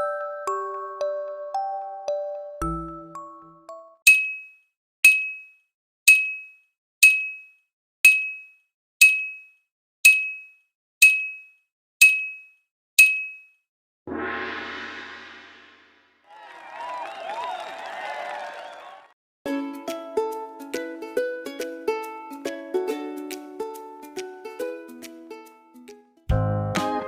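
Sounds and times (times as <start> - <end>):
gong-like ringing hit: 14.1 - 16.0.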